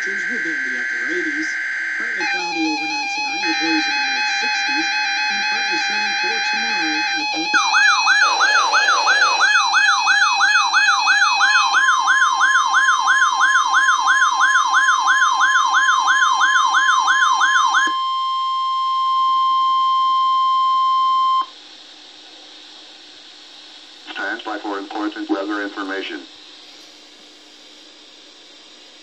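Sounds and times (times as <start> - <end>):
electronic siren wail: 0.0 - 21.5
steady warning alarm tone: 0.0 - 21.6
faint radio static hiss: 22.3 - 29.0.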